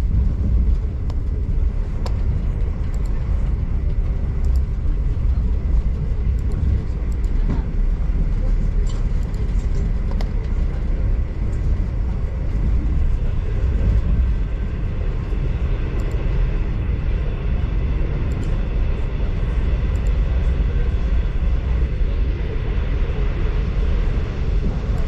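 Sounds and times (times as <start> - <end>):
train rumbling inside carriage: 0.0 - 25.0.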